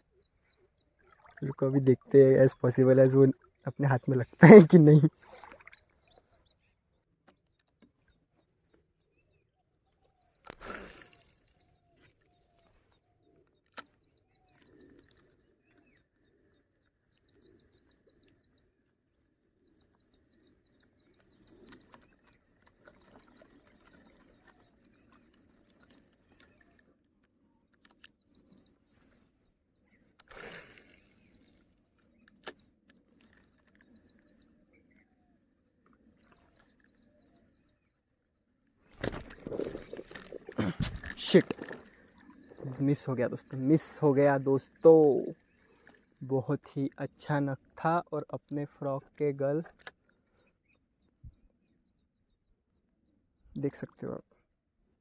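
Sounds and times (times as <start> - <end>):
faint birds chirping: 0.0 - 55.0
sharp clicks: 13.6 - 14.0.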